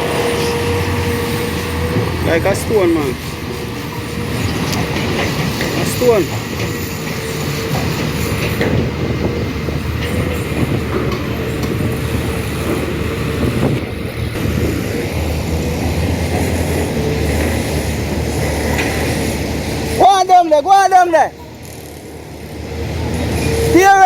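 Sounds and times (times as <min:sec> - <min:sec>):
constant machine whine: 0:00.0 - 0:24.0.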